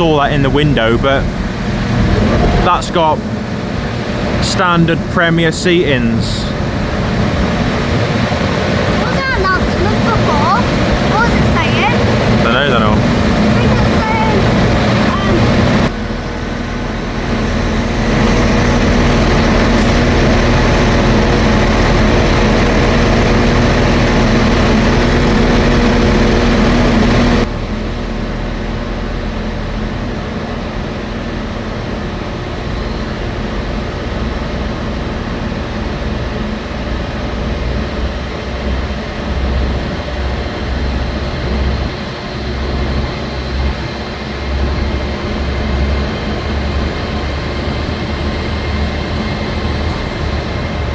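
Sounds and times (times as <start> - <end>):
uneven low rumble: 0.0 - 5.2
train engine humming: 0.0 - 50.9.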